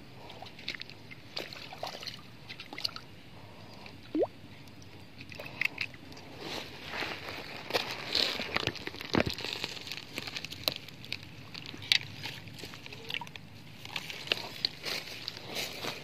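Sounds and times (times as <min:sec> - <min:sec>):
river water splashing: 0:00.2 - 0:03.1.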